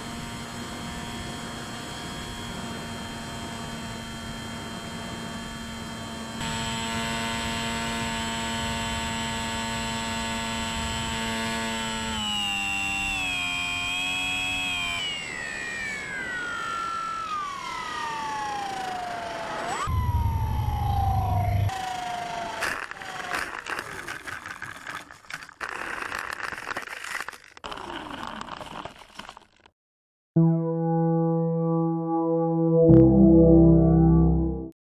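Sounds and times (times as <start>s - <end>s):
rc plane motor whining: 0.0s - 28.1s
loud low rumble: 19.9s - 21.7s.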